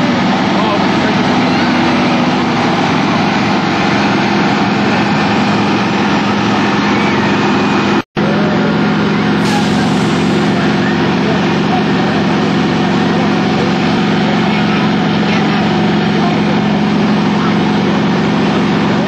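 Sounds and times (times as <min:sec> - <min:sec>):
truck engines rumbling: 0:00.0 - 0:19.0.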